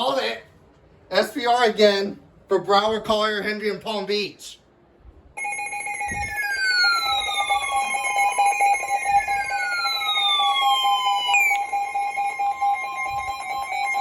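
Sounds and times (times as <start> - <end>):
electronic alarm tones: 5.4 - 14.0
falling pitch sweeps: 5.4 - 14.0.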